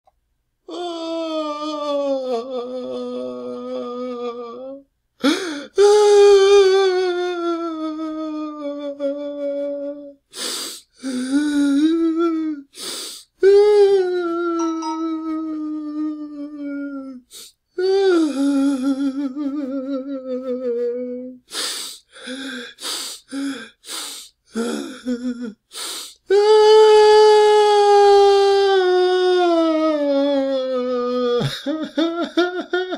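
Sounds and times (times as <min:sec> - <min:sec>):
man crying with wailing sobs: 0:05.4 - 0:10.2, 0:17.9 - 0:21.4, 0:24.6 - 0:25.6, 0:26.6 - 0:32.9.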